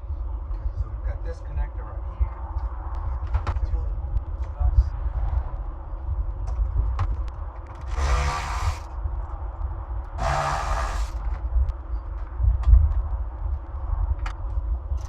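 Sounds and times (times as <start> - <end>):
low rumble: 0.0 - 15.0
power drill running: 7.9 - 8.9, 10.2 - 11.2.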